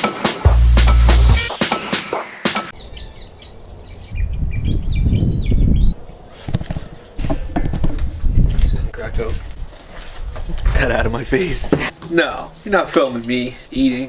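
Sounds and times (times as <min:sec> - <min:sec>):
small birds chirping: 0:02.7 - 0:07.6, 0:11.0 - 0:14.0.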